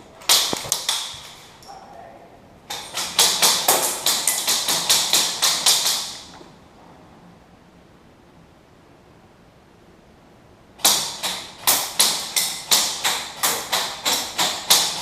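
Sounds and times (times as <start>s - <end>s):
airsoft guns firing: 2.7s - 6.3s.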